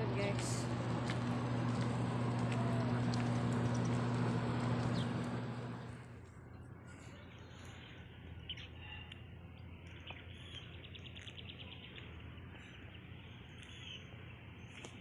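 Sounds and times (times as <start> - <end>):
trilled run of ticks: 0.8 - 6.0
faint bird chirps: 6.9 - 14.8.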